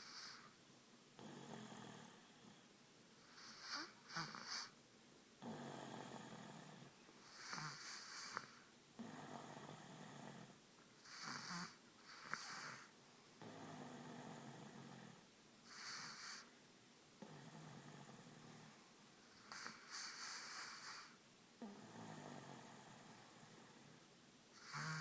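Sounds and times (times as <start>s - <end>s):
quiet breaths: 0.0s - 25.0s
person snoring: 24.6s - 25.0s.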